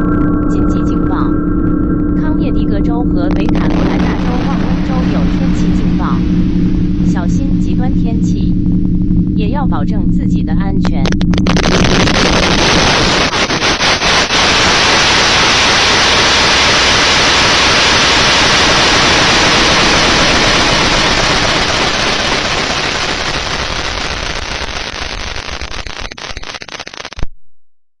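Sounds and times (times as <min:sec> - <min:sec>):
static crackle: 0:00.0 - 0:09.4, 0:10.6 - 0:27.3
static hiss: 0:03.5 - 0:06.8, 0:11.0 - 0:27.2.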